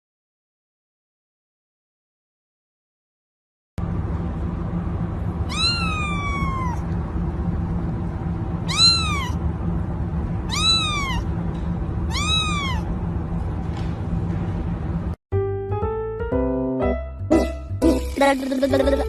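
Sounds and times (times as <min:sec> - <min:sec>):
cat meowing: 0:05.4 - 0:06.9, 0:08.6 - 0:09.4, 0:10.5 - 0:11.3, 0:12.1 - 0:12.9.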